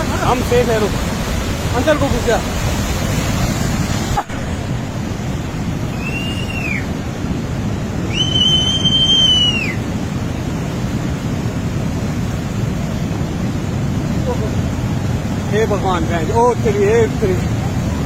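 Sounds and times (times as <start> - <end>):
rushing floodwater roar: 0.0 - 18.0
high whistles: 5.9 - 6.9, 8.0 - 9.8.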